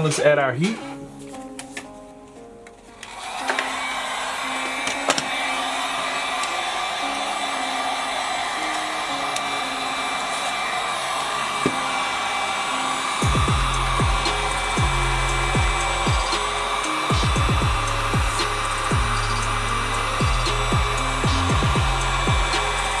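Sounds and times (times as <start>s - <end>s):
heat gun blowing with whine: 3.1s - 23.0s.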